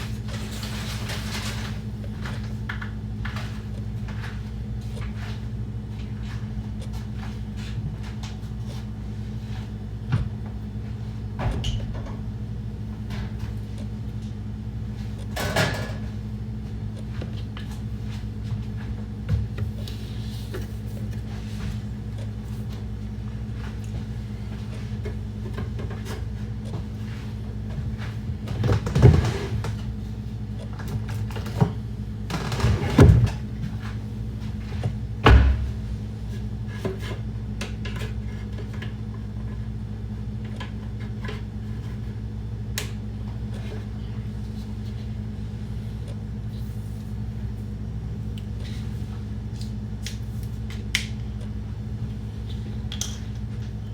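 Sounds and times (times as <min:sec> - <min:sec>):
steady low hum: 0:00.0 - 0:53.9
kitchen items knocking and clunking: 0:15.3 - 0:16.2, 0:27.7 - 0:29.9.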